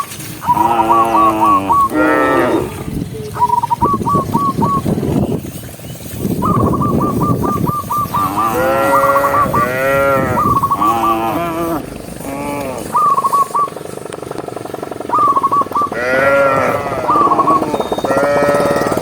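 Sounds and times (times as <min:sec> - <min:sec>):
short high repeated calls: 0:00.0 - 0:02.0, 0:03.3 - 0:04.9, 0:06.4 - 0:13.9, 0:15.1 - 0:19.0
cattle mooing: 0:00.4 - 0:03.5, 0:08.0 - 0:13.8, 0:15.2 - 0:19.0.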